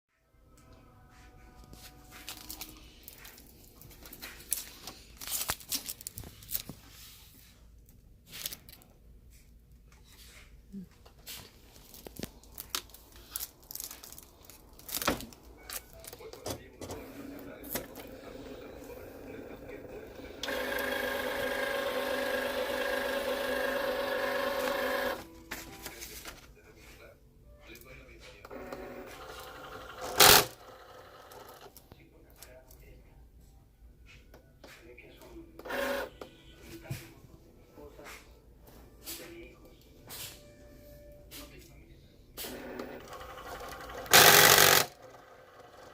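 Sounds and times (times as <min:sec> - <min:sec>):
cutting machine scraping: 0:16.9 - 0:25.2, 0:28.5 - 0:31.7, 0:35.6 - 0:36.1, 0:42.4 - 0:45.9.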